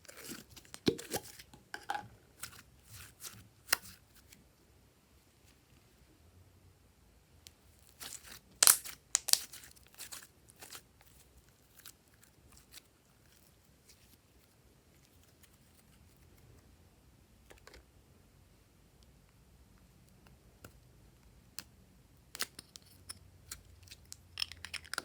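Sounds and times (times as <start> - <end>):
crinkling handling noises: 7.8 - 16.5.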